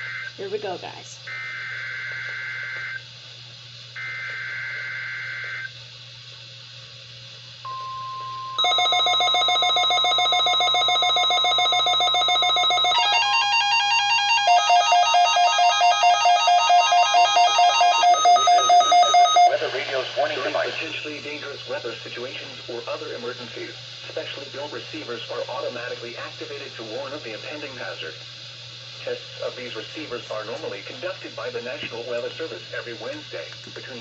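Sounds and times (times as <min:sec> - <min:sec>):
electronic alarm buzzing and pulsing: 0:00.0 - 0:03.1, 0:04.0 - 0:05.8, 0:07.7 - 0:20.6
steady warning alarm tone: 0:00.0 - 0:03.1, 0:04.0 - 0:05.8, 0:07.6 - 0:21.2
digital data tones: 0:07.7 - 0:20.4.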